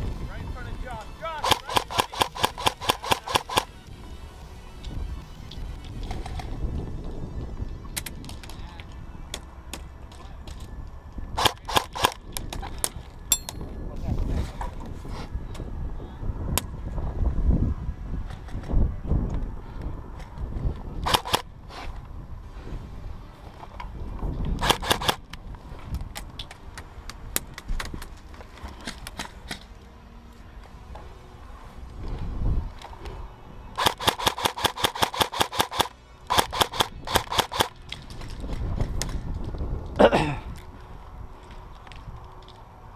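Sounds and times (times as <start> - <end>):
wind rumble on microphone: 0.0 - 42.9
airsoft gun shots: 1.4 - 3.7, 33.8 - 37.7.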